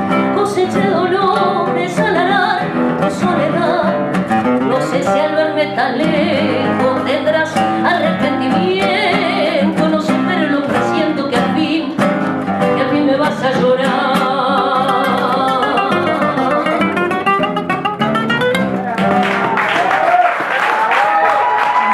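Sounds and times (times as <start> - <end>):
acoustic guitars playing tango: 0.0 - 19.7
woman singing: 0.1 - 16.9.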